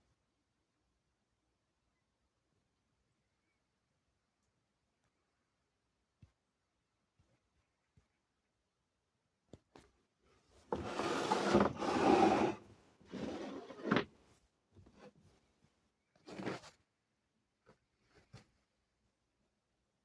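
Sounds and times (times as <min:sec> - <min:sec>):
rubbing and scraping handling noises: 0:10.6 - 0:15.5.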